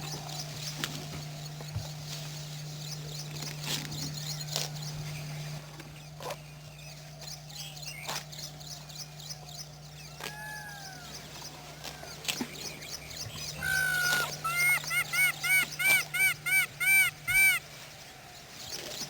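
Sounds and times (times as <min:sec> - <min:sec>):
faint calls of other birds: 0:02.7 - 0:19.0
bird calling ringing notes: 0:13.3 - 0:17.6.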